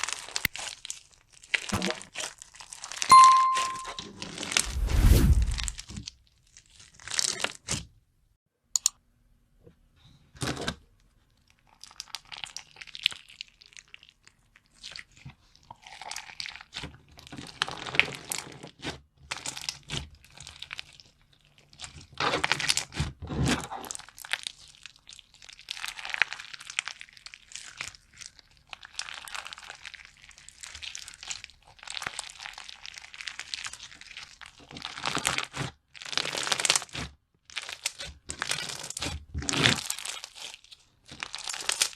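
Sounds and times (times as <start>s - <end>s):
slime crackling when squeezed: 37.6s - 41.9s.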